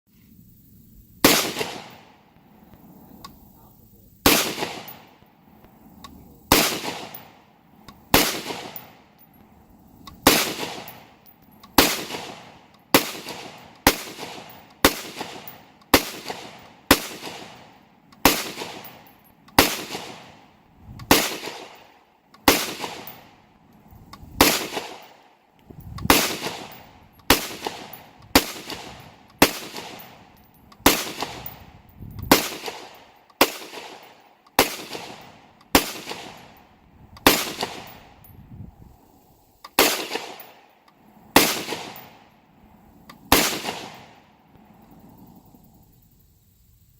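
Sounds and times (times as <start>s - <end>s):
rifle shots cracking: 1.2s - 2.7s, 4.2s - 5.3s, 6.0s - 9.2s, 10.1s - 23.4s, 24.2s - 25.3s, 26.0s - 31.7s, 32.3s - 38.2s, 39.7s - 42.3s, 43.1s - 44.3s.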